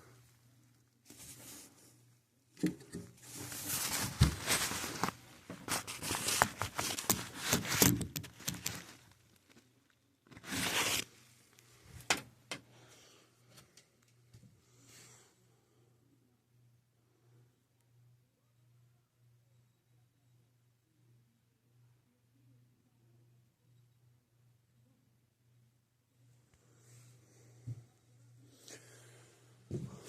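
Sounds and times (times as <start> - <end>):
rustling and crinkling: 0.0 - 2.0, 2.6 - 12.2.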